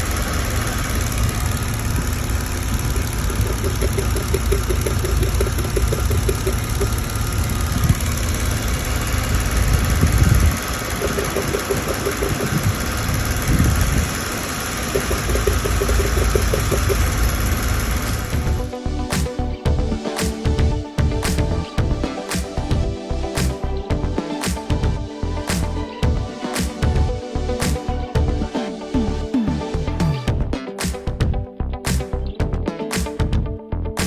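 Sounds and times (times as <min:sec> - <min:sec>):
car engine idling unevenly: 0:00.0 - 0:18.6.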